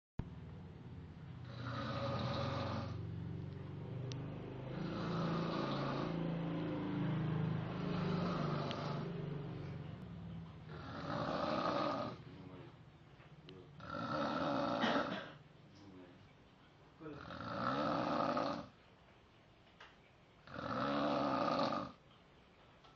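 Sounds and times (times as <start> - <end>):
person snoring: 1.4 - 3.0, 4.6 - 6.4, 7.5 - 9.3, 10.7 - 12.5, 13.8 - 15.1, 17.0 - 18.7, 20.4 - 22.0.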